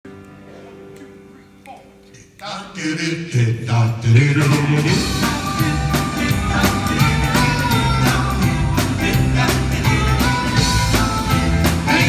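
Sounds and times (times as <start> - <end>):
sung harmonies: 0.1 - 12.0
rock and roll record playing: 4.3 - 12.0.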